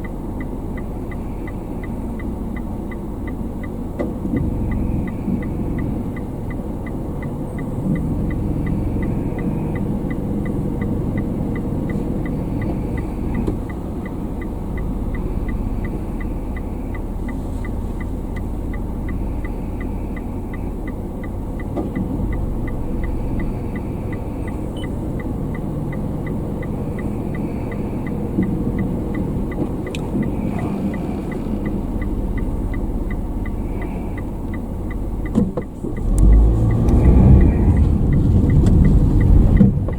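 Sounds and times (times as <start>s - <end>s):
car engine and road noise: 0.0s - 39.9s
faint even ticking: 0.0s - 39.9s.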